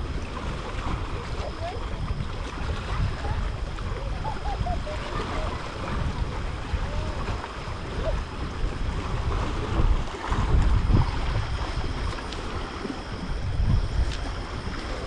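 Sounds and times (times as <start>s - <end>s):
wind buffeting microphone: 0.0s - 15.0s.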